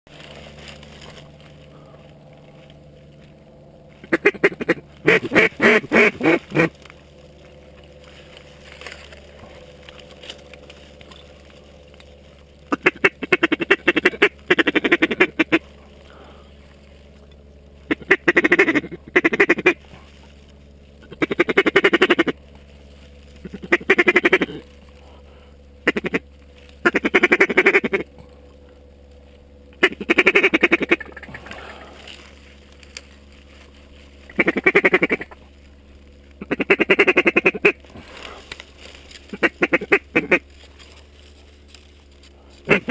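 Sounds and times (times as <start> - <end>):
duck quacking rapidly: 4.0 - 6.7, 12.7 - 15.7, 17.9 - 19.8, 21.0 - 22.4, 23.4 - 24.6, 25.8 - 26.2, 26.8 - 28.1, 29.8 - 31.5, 34.3 - 35.4, 36.4 - 37.8, 39.3 - 40.4, 42.7 - 42.9.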